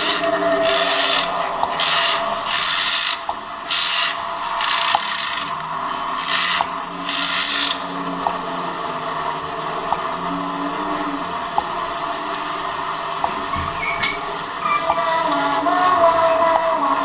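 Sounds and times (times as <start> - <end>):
sharp ticks: 0.0 - 5.6, 6.2 - 8.4
harsh noisy bursts: 0.0 - 17.0
low steady drone: 0.0 - 17.0.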